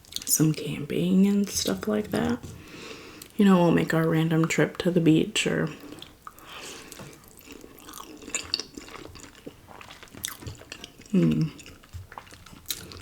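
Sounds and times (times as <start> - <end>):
person chewing noodles: 5.8 - 13.0.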